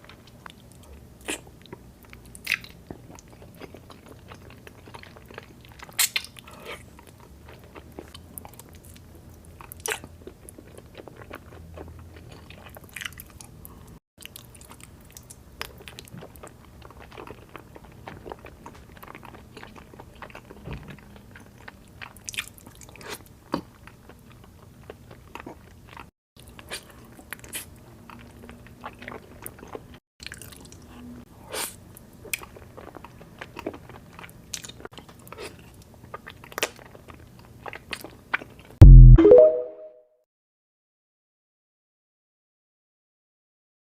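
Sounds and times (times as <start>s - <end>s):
loud low boom: 38.8s - 39.2s.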